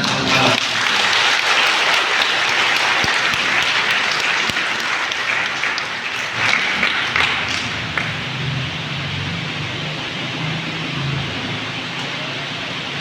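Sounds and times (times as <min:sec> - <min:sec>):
crowd applauding: 0:00.0 - 0:09.6.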